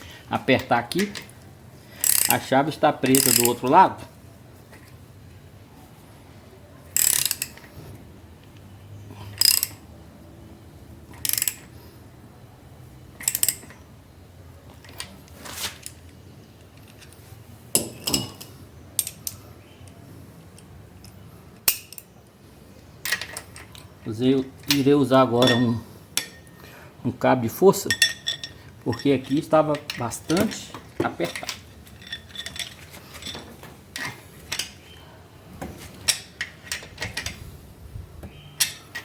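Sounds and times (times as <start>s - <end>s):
ratchet wrench clicking: 2.0s - 2.4s, 3.0s - 3.6s, 7.0s - 7.6s, 9.4s - 9.8s, 11.1s - 11.7s, 13.2s - 13.8s.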